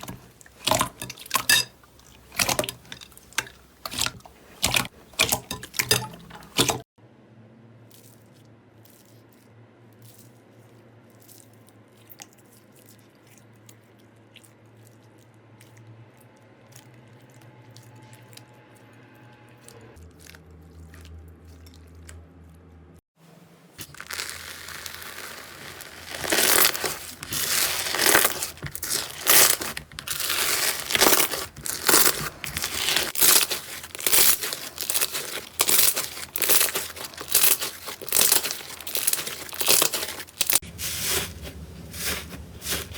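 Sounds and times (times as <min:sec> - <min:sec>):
crunchy slime crackling: 0:23.8 - 0:42.9.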